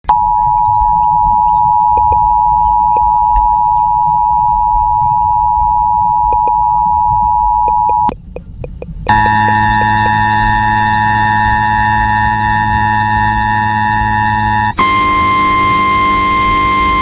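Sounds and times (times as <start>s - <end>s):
low radio static: 0.2s - 12.6s
two-tone alert signal: 1.6s - 3.3s, 6.1s - 10.7s.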